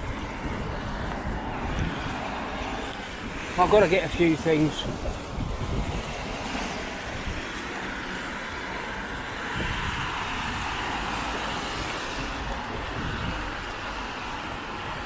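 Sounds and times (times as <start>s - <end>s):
tyres hissing on wet road: 0.0s - 15.0s.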